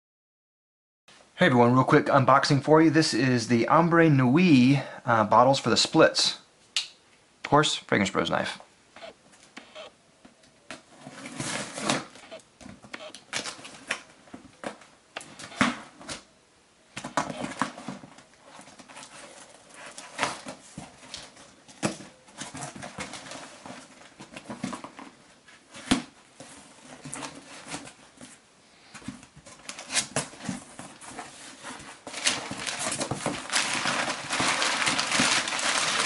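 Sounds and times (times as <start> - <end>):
packing paper crinkling: 29.5 - 36.0.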